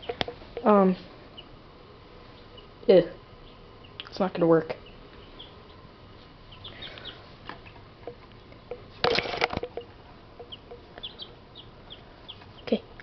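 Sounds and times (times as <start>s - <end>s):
baby chicks peeping: 0.0s - 13.0s
rustling and scrabbling: 7.3s - 11.0s.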